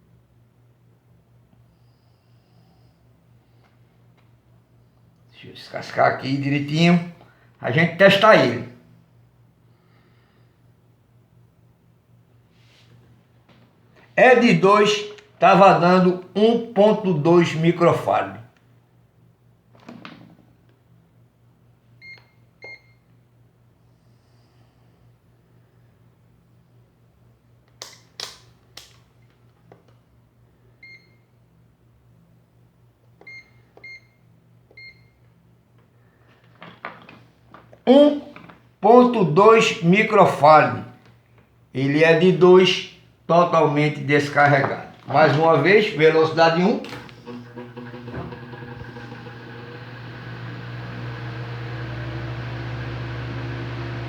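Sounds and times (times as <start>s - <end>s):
low electrical hum: 0.0s - 54.0s
electric fan motor humming: 41.8s - 54.0s.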